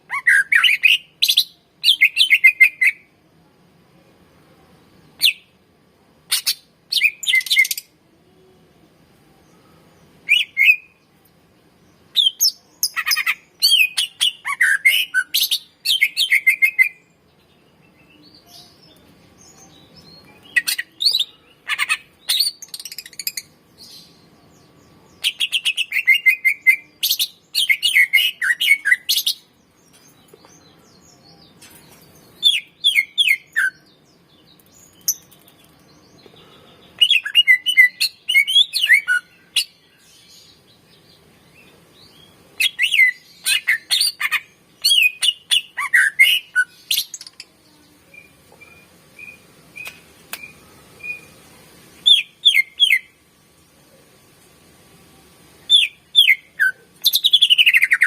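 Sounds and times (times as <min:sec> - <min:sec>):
bird singing chirps and trills: 0:09.4 - 0:51.4, 0:52.0 - 0:53.2, 0:55.6 - 0:58.0.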